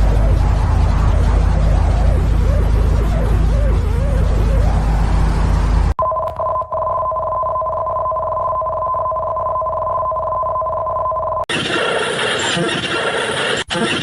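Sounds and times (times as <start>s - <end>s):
loud noisy rumble: 0.0s - 6.0s.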